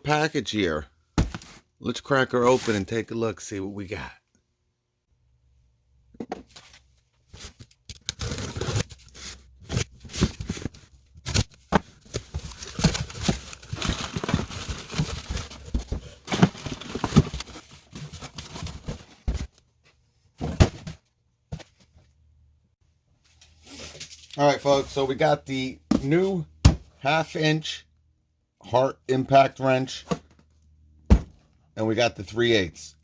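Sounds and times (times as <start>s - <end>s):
packaging crinkling and rustling: 7.4s - 19.3s.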